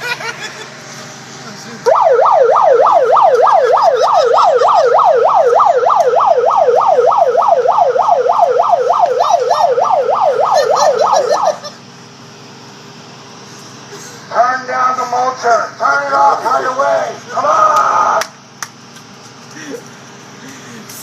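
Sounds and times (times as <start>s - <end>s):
bullhorn siren yelping: 1.9s - 11.8s.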